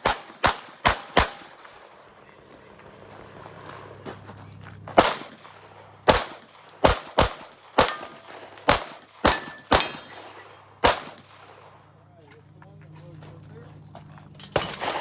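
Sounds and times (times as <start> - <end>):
pistol shots: 0.0 - 2.0, 4.9 - 11.9, 14.6 - 15.0
steel targets ringing: 7.8 - 10.8.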